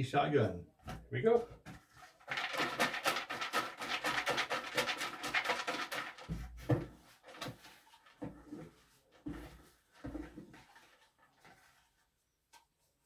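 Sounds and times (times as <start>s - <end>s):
soft knocks and handling: 0.8s - 2.1s
paper tickets rattling rustle: 1.3s - 6.4s.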